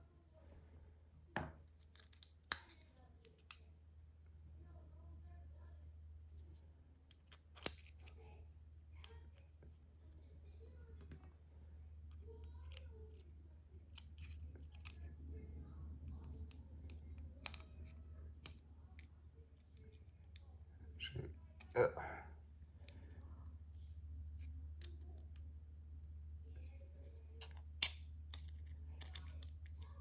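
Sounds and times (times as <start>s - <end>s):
faint low hum: 0.0s - 30.0s
knife parts clicking and tapping: 7.1s - 8.1s, 27.4s - 29.8s.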